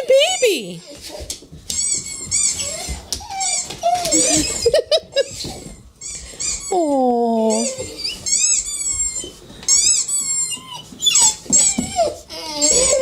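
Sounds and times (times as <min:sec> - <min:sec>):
dog whining: 0:00.0 - 0:13.0
squeaky toy squeaks: 0:01.7 - 0:04.7, 0:07.5 - 0:13.0.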